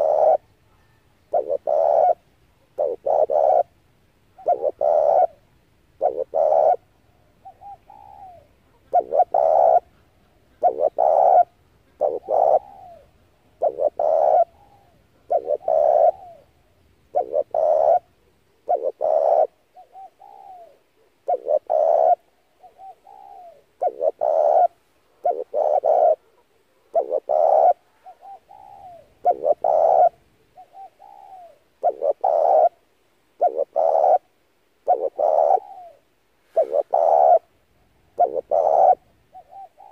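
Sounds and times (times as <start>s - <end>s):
dove cooing: 0.0s - 3.8s, 4.4s - 39.9s.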